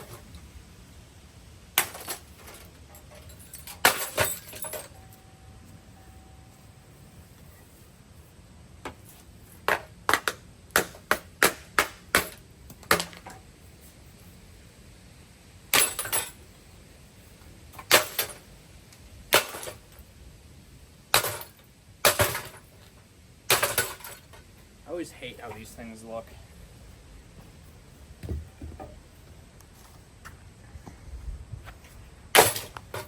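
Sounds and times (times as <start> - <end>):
ceiling fan being smashed: 1.8 - 5.0, 9.6 - 13.4, 15.7 - 16.4, 17.8 - 18.5, 19.3 - 20.0, 21.1 - 22.7, 23.5 - 24.4, 32.3 - 33.0
rattle of breaking pieces: 1.8 - 5.0, 15.7 - 16.4, 17.8 - 18.5, 19.3 - 20.0, 21.1 - 22.7, 23.5 - 24.4, 32.3 - 33.0.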